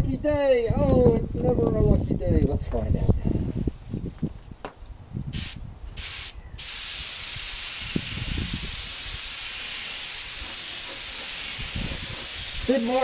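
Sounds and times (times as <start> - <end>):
spray gun hissing: 5.4 - 13.0.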